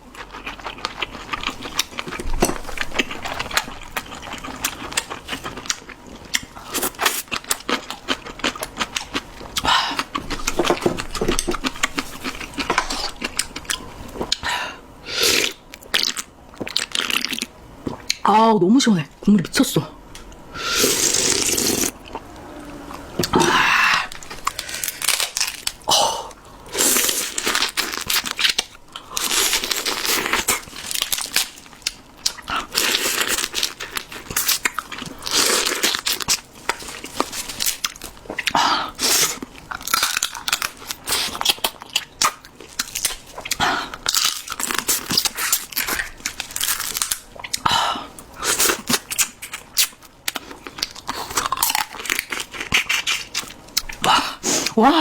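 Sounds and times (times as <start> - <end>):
chewing and crunching: 0.0 - 14.5, 21.0 - 54.8
slurping noodles: 20.6 - 25.0.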